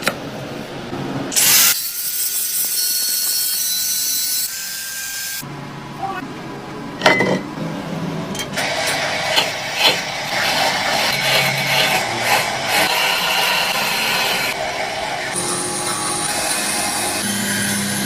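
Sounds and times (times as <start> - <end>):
power tool grating: 8.6 - 18.0.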